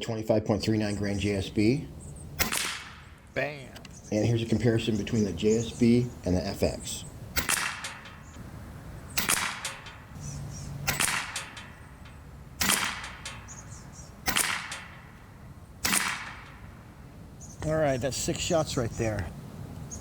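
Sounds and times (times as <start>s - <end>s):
air rifle shots: 1.8s - 3.9s, 7.0s - 17.2s.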